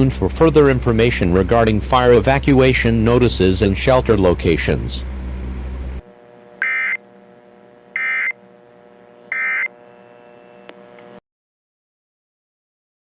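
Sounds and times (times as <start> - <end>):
faint steady hum: 0.0 - 11.2
screeching data bursts: 6.6 - 7.1, 8.0 - 8.4, 9.3 - 9.8.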